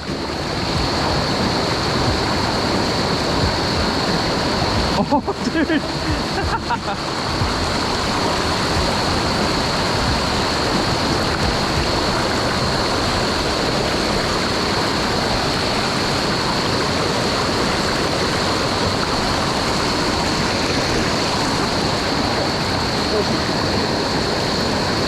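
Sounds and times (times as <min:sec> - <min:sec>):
stream rushing over rocks: 0:00.0 - 0:25.0.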